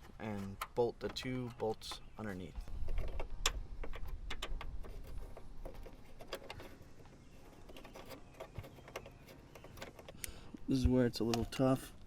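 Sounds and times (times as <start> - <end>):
hand tools clicking and tapping: 2.9 - 10.4.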